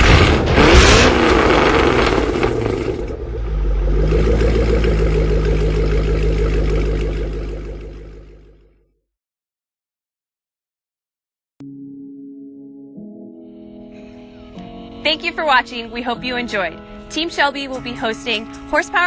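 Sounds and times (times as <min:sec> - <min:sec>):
car engine revving and idling: 0:00.0 - 0:08.7.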